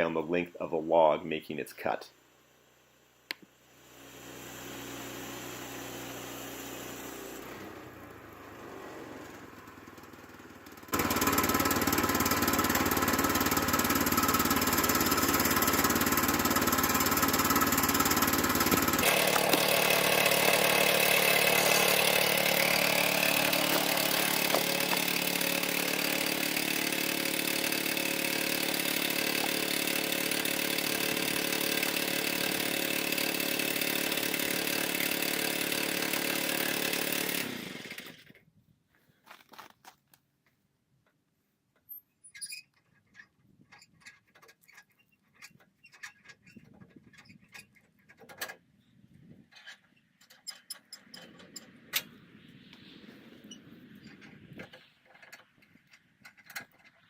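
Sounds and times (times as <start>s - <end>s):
sawmill engine running: 3.8s - 38.2s
band blade cutting log: 13.6s - 38.1s.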